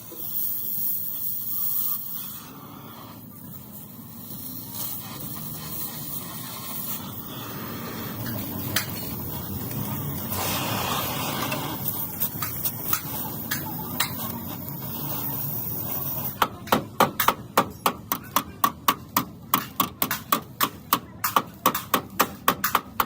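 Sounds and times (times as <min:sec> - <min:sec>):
workshop hiss: 0:00.0 - 0:23.0
hammer beating sheet metal: 0:08.2 - 0:09.8, 0:11.3 - 0:14.3, 0:16.4 - 0:23.0
scattered taps: 0:16.4 - 0:23.0.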